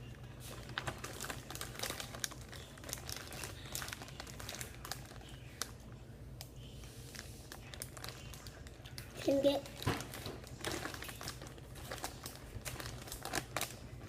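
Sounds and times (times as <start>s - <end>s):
crinkling and rustling: 0.0s - 14.0s.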